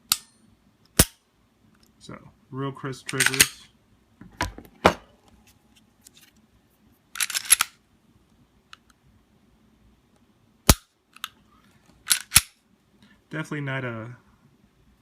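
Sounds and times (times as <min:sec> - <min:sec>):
pistol metallic clicks: 0:00.0 - 0:01.2, 0:03.1 - 0:03.6, 0:12.1 - 0:12.6.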